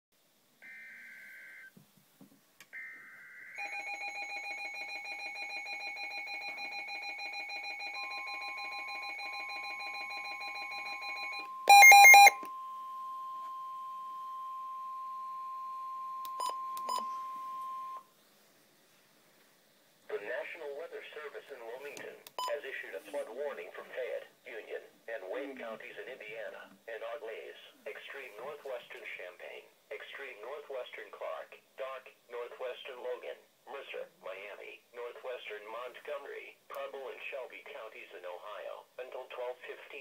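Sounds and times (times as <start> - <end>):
pulsing electronic alarm: 2.8 - 18.0
steady alert tone: 8.0 - 12.4.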